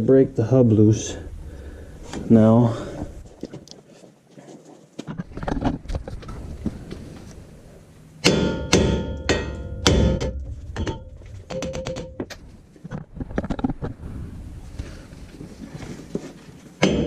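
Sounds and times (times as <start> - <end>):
hammer striking steel: 8.2 - 12.3.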